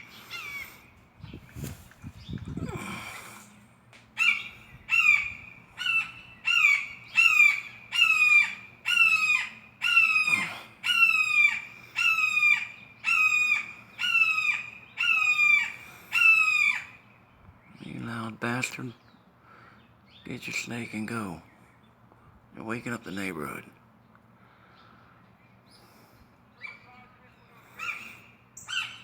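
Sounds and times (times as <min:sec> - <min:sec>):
hawk screaming: 0:04.2 - 0:16.9.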